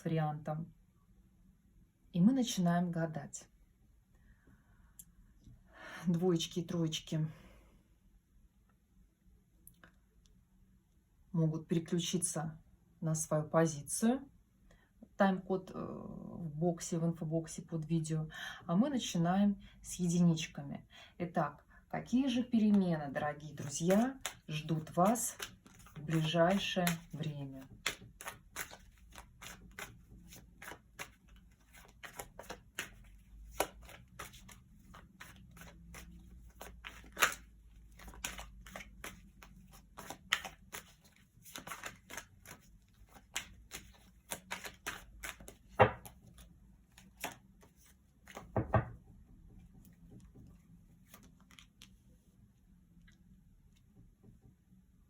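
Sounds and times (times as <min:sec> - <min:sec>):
cards being shuffled: 0:22.4 - 0:48.9, 0:51.0 - 0:52.0.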